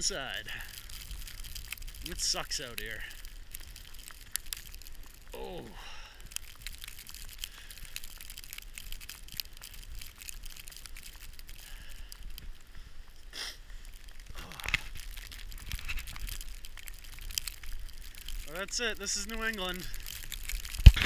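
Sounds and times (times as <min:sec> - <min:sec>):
footsteps crunching in snow: 0:00.0 - 0:05.7.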